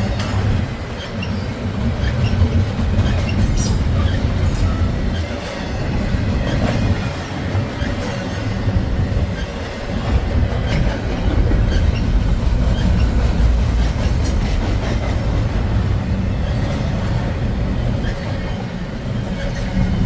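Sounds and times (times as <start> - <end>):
train clicks and clacks: 0.0 - 20.0
train wheels rumbling on rails: 0.0 - 20.0.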